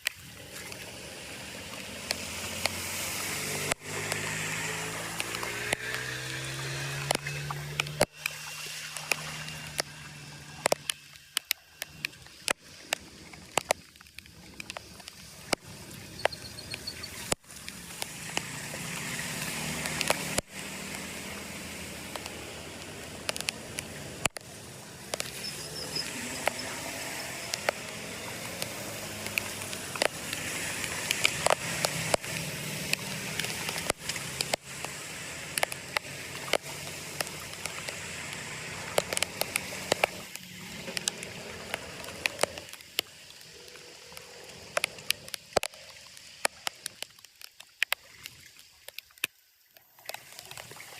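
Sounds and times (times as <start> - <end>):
water rushing and gurgling: 0.0 - 50.9.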